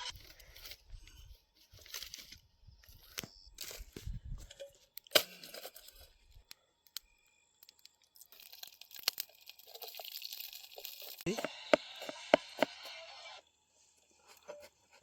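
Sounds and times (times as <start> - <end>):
hot oil sizzling and crackling: 8.2 - 12.7.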